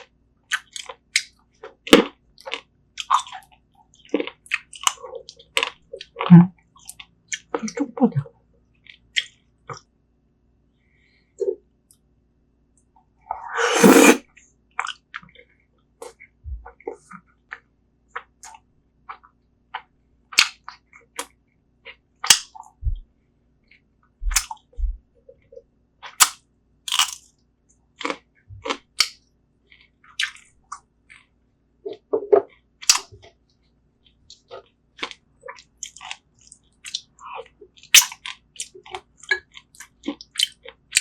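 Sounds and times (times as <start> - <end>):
wet chewing and lip-smacking: 28.0 - 31.3, 34.0 - 41.0.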